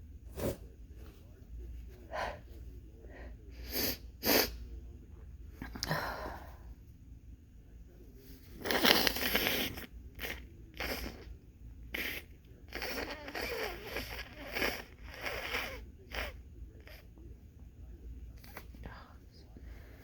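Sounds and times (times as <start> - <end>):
nose sniffs and snorts: 8.6 - 11.3, 11.9 - 17.0.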